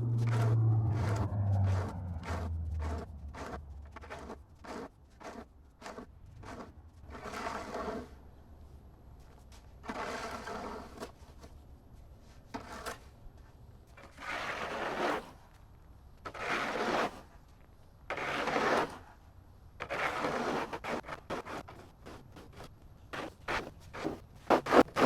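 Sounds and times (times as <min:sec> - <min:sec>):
shovel scraping snow: 0:14.0 - 0:15.4, 0:16.3 - 0:17.3, 0:18.1 - 0:19.1, 0:19.8 - 0:25.0.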